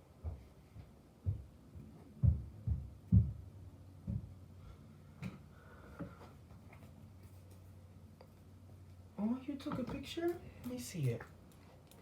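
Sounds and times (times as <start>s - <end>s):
faint steady hum: 0.0s - 12.0s
dull low thumps: 1.2s - 4.4s.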